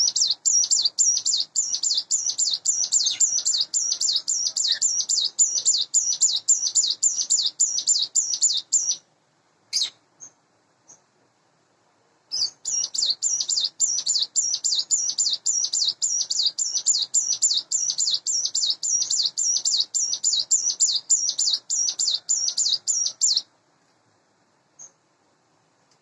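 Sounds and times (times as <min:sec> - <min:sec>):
bird singing high sweeping notes: 0:12.4 - 0:23.4.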